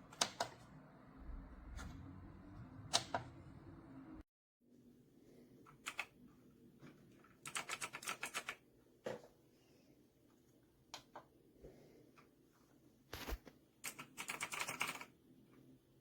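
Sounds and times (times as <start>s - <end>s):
computer keyboard keystrokes: 5.7s - 6.1s, 7.4s - 8.6s, 13.8s - 15.1s.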